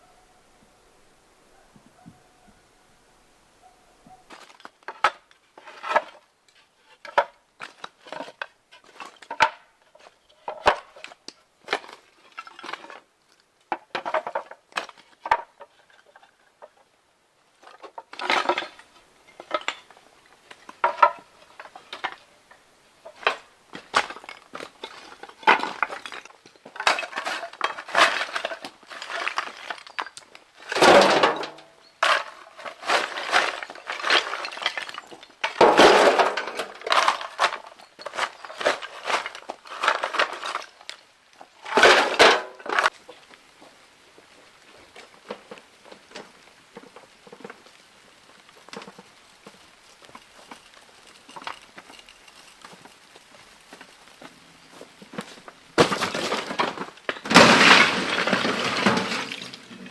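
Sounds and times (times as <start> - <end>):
rubble clinking and clattering: 17.6 - 43.0, 44.9 - 54.4, 55.0 - 59.9
rubble crash: 17.6 - 43.0, 55.0 - 59.9.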